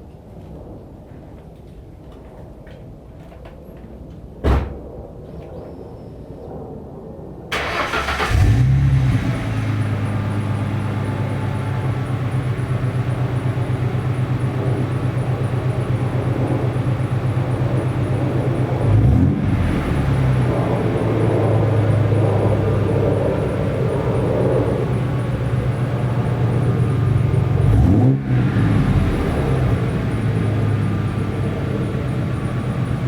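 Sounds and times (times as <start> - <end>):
car engine starting and idling: 7.5 - 33.0.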